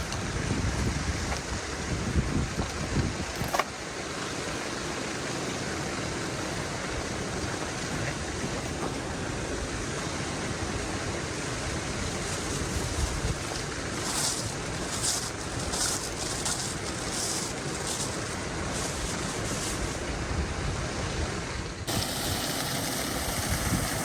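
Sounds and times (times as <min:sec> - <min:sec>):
wind buffeting microphone: 0:00.0 - 0:03.5.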